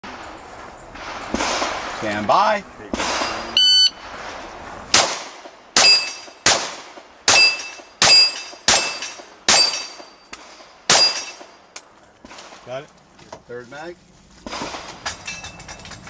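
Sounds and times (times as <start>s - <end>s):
pistol shots: 4.9s - 11.5s
bullet hitting steel plate: 5.8s - 6.7s, 7.3s - 11.6s.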